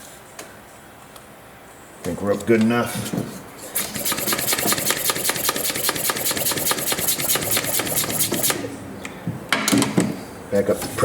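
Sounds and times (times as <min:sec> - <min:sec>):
ratchet wrench clicking: 0:03.8 - 0:08.7.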